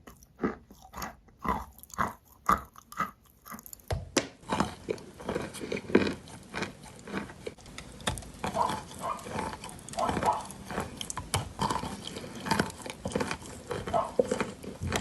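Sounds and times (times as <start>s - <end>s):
wet gritty material crunching: 0.0s - 15.0s.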